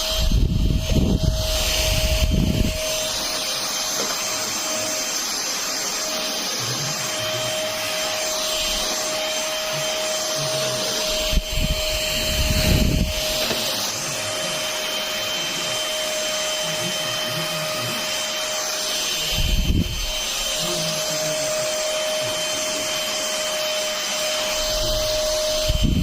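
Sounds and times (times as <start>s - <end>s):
stick vacuum whining: 0.0s - 26.0s.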